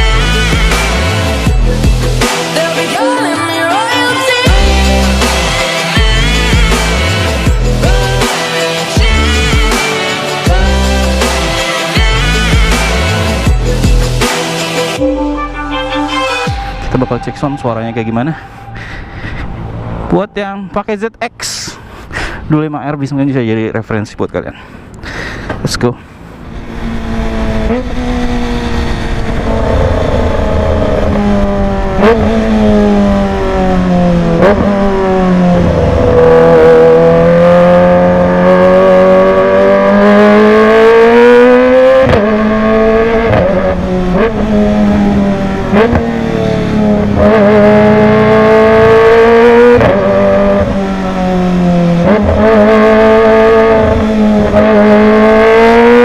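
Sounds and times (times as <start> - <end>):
motorcycle engine revving: 26.6 - 56.0.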